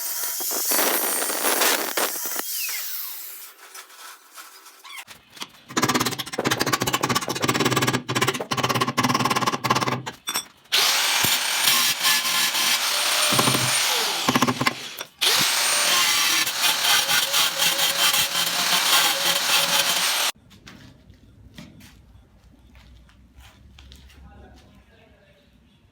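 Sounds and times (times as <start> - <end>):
angle grinder cutting tile: 0.0 - 3.6, 10.7 - 20.4.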